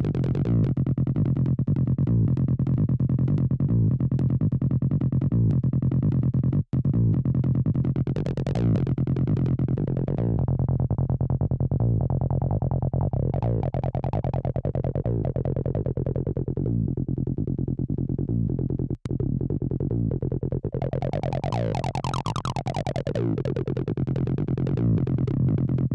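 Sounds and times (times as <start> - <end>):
squelchy synthesizer bass line: 11.8 - 25.9.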